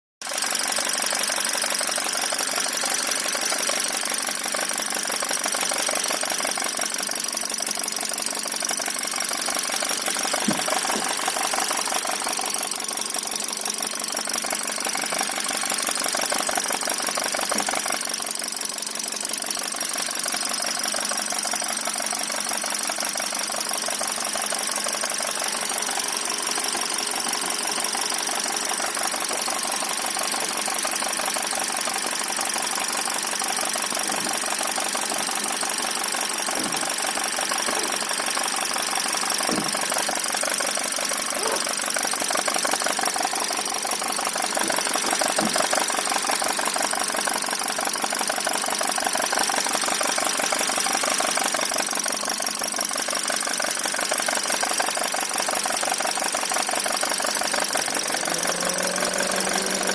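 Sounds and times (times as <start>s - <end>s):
rapid engine ticking-knocking: 0.2s - 59.9s
car engine running: 0.3s - 59.9s.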